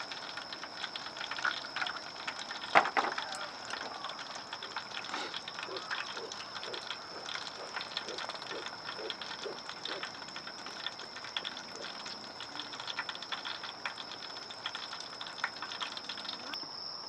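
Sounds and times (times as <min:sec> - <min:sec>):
crickets chirping: 0:00.0 - 0:17.0
sharp clicks: 0:03.2 - 0:16.5.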